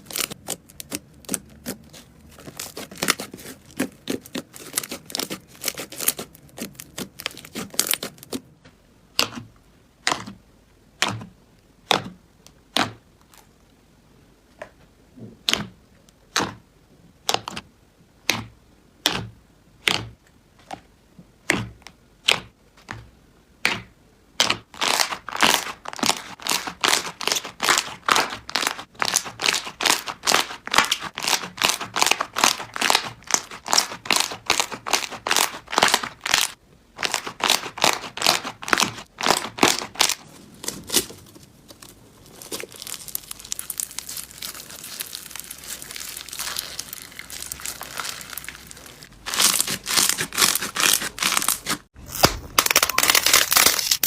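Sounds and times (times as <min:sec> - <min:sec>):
slime squeezed clicking and crackling: 0:00.0 - 0:08.4, 0:24.8 - 0:40.2, 0:42.2 - 0:51.7.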